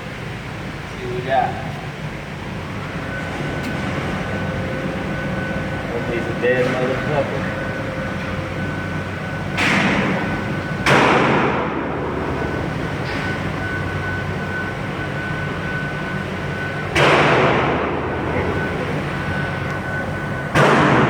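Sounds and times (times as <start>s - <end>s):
steady hum: 0.0s - 21.0s
pistol shots: 20.6s - 21.0s.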